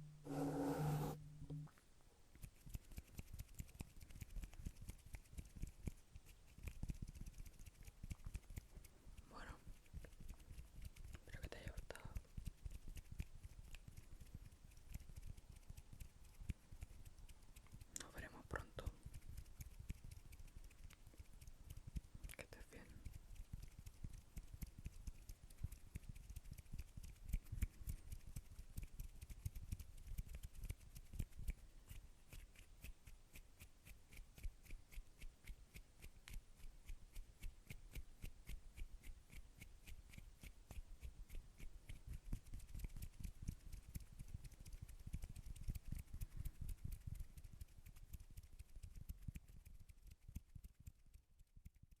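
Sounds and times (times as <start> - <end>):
fingers tapping and rubbing: 0.0 - 1.7, 39.8 - 51.0
soft low thumps: 0.0 - 1.8.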